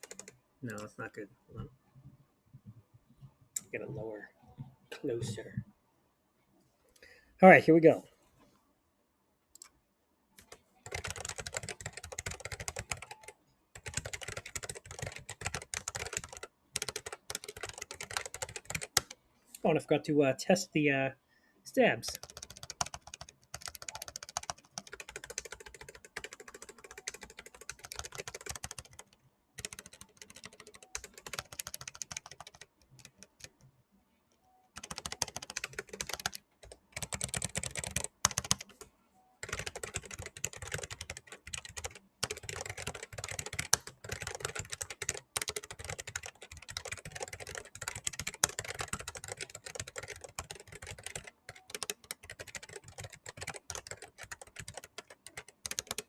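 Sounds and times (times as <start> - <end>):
fast typing key clacks: 0.0 - 0.3, 10.9 - 19.1, 22.1 - 29.0, 29.6 - 33.5, 34.8 - 38.7, 39.4 - 56.0.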